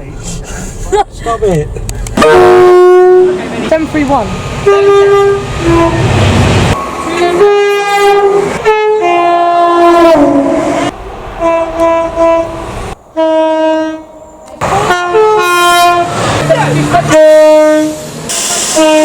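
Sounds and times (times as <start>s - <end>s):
horn blasts in chords: 2.2s - 3.4s, 4.6s - 6.3s, 7.1s - 19.0s.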